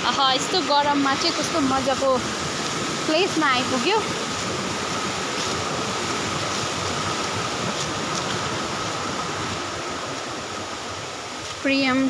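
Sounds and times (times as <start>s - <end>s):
stream water rushing: 0.0s - 12.0s.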